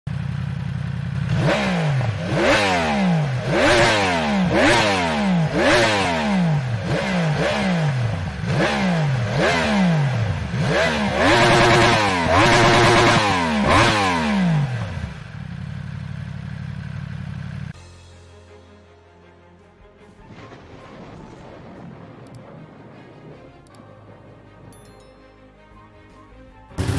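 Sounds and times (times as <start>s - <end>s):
motorcycle engine revving: 0.1s - 17.8s.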